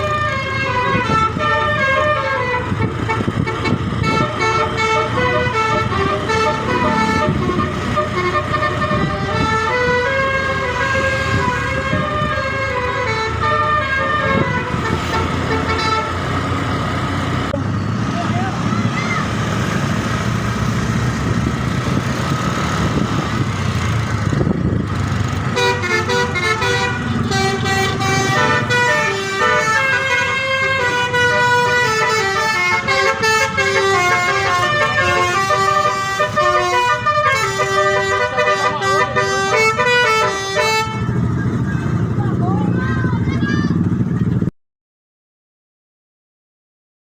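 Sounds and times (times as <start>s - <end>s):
air horn playing a tune: 0.0s - 16.2s, 25.6s - 41.3s.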